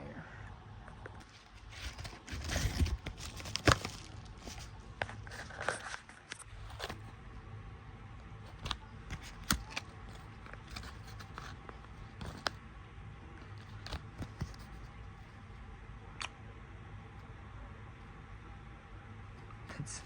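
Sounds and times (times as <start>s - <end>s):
steady low hum: 0.0s - 20.0s
light rustling of packaging: 0.9s - 7.2s, 8.3s - 12.6s, 13.3s - 15.5s.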